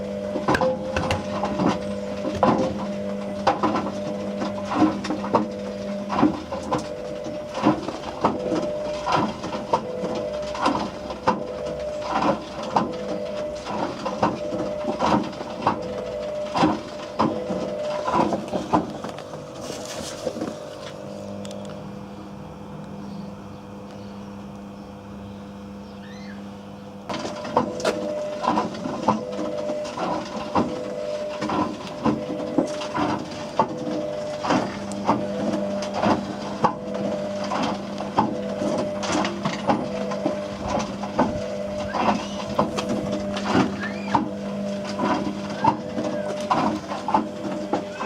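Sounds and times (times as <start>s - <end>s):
washing machine motor hum: 0.0s - 48.0s
objects knocking inside washing machine: 0.4s - 2.8s.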